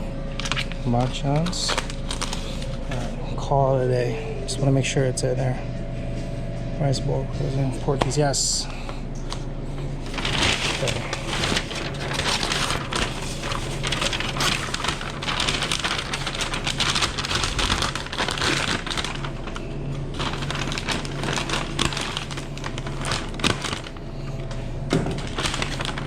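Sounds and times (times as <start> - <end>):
ventilation hum: 0.0 - 26.0
kitchen crackling and rustling: 10.0 - 24.0, 24.9 - 26.0.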